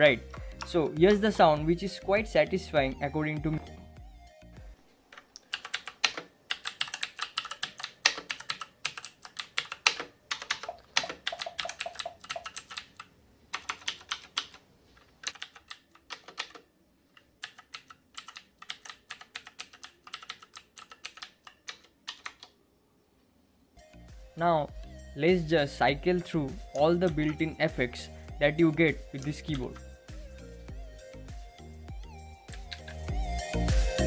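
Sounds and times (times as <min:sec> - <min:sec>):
clicky mechanical keyboard typing: 0:05.2 - 0:14.6, 0:15.2 - 0:22.6, 0:32.5 - 0:33.1.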